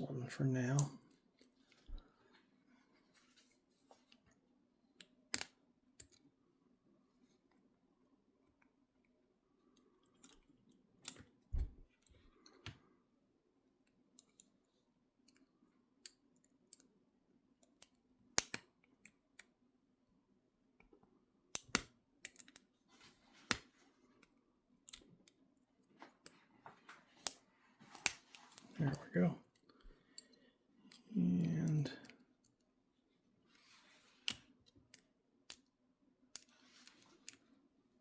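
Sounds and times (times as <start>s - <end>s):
metallic clicks of lock picking: 17.6s - 19.5s, 21.5s - 22.6s.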